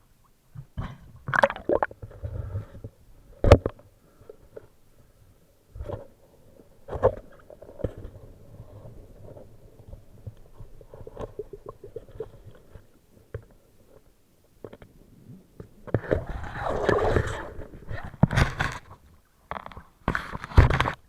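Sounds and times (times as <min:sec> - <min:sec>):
underwater gurgling rumble: 0:01.2 - 0:02.8, 0:06.4 - 0:13.0, 0:15.0 - 0:18.2.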